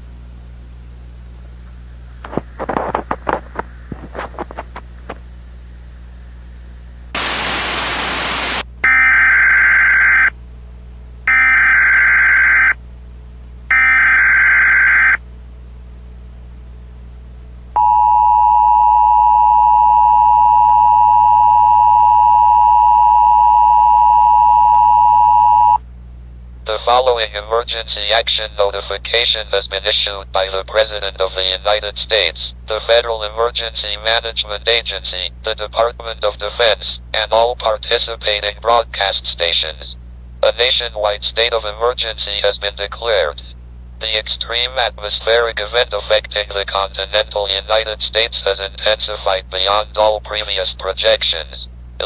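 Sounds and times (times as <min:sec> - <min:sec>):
static burst: 0:07.1 - 0:08.7
two-tone alert signal: 0:13.7 - 0:15.2, 0:17.8 - 0:25.8.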